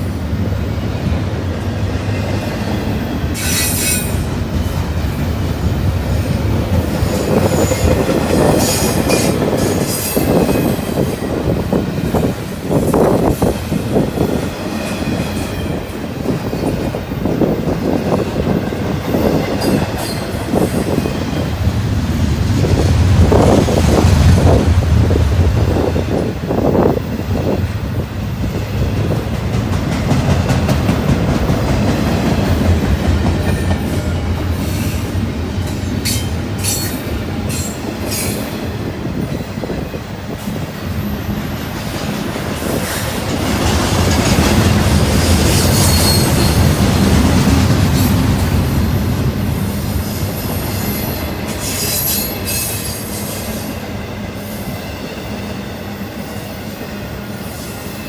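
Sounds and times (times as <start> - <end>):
freight train wheels rumbling: 0.0 - 58.0
high wheel squeals: 3.3 - 4.3, 45.4 - 46.7.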